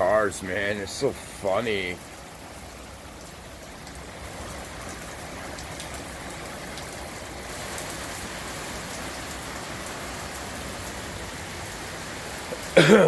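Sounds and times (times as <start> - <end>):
close raindrop hits: 0.0 - 13.0
heavy rain: 0.0 - 13.0.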